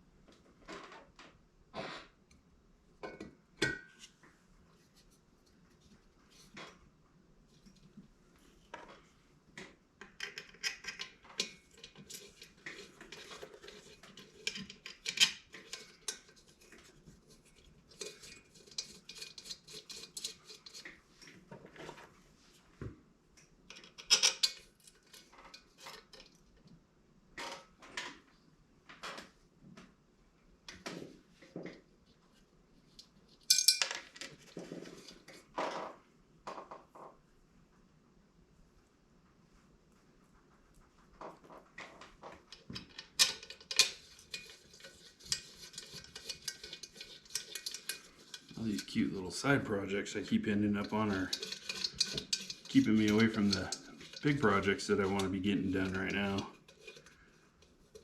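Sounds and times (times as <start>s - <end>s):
metal tools clinking and rattling: 23.7s - 25.0s, 33.5s - 34.1s, 42.6s - 57.1s.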